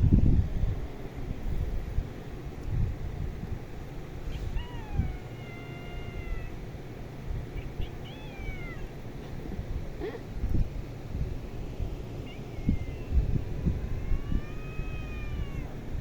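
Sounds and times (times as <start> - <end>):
cat meowing: 4.3 - 6.6, 7.5 - 9.0, 12.2 - 15.8.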